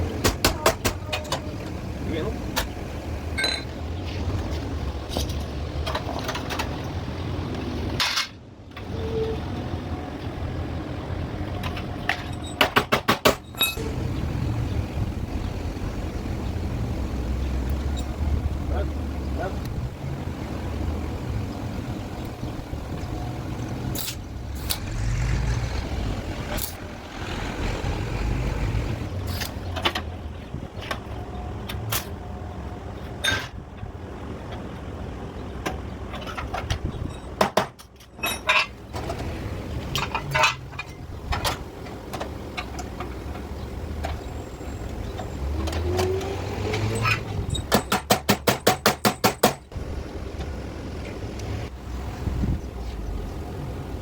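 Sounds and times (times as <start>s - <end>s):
metal clinks and knocks: 3.4s - 3.8s, 11.6s - 13.9s, 36.1s - 38.8s
low engine rumble: 13.6s - 37.3s, 49.7s - 54.0s.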